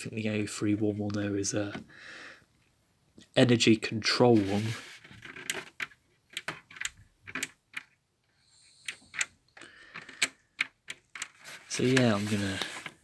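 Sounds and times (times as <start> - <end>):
toy washing machine clicks and taps: 5.4 - 7.9, 10.0 - 11.4.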